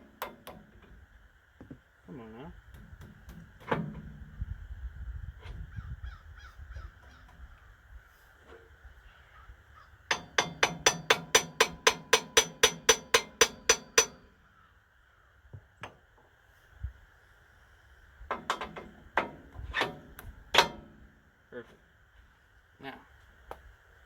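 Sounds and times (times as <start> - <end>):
quiet metal clanks: 0.0 - 1.0, 2.7 - 4.4, 10.1 - 14.4, 15.6 - 16.4, 18.2 - 21.9
hammer striking steel: 10.1 - 14.4, 18.4 - 21.0.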